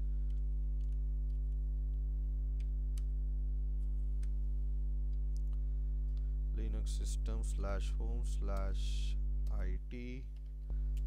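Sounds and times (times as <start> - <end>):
electrical mains hum: 0.0 - 11.0
faint clicks: 9.4 - 11.0.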